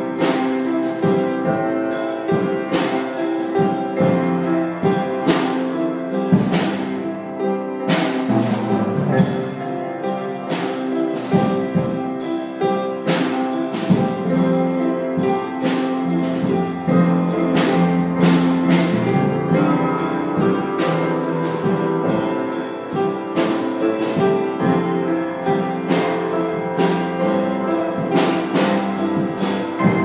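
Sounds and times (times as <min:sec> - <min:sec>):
piano chords: 0:00.0 - 0:30.0
drum and cymbal hits: 0:02.3 - 0:07.1, 0:13.1 - 0:30.0.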